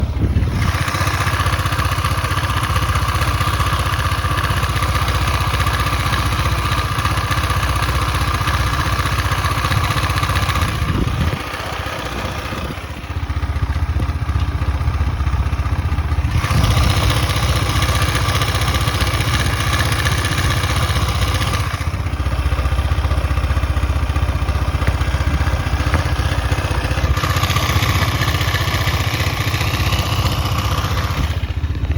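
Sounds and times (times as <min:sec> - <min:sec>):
motorcycle engine running: 0:00.0 - 0:31.9.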